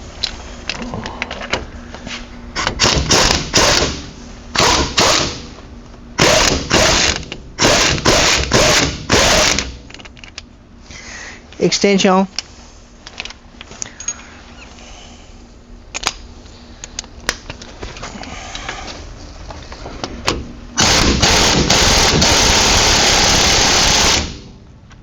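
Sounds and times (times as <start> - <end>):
impact wrench running: 2.6 - 5.6, 6.2 - 10.1, 20.8 - 24.6
tools clinking: 13.2 - 14.4.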